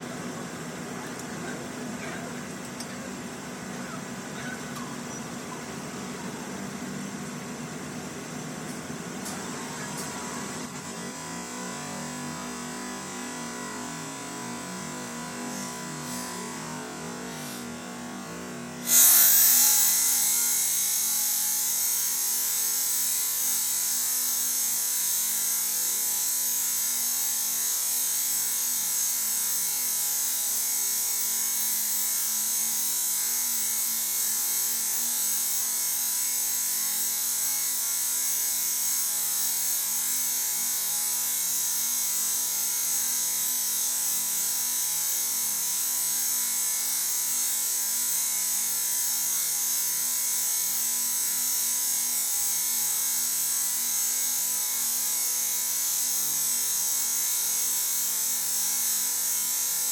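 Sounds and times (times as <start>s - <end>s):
workshop tool hissing: 15.5s - 17.8s, 18.7s - 41.8s.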